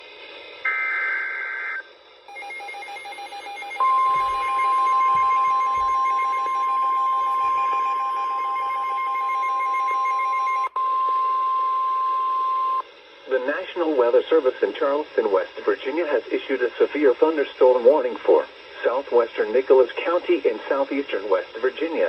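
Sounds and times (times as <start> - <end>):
steady warning alarm tone: 1.6 - 12.8
rapidly pulsing beep: 2.3 - 12.8
data tones burst: 3.5 - 12.8.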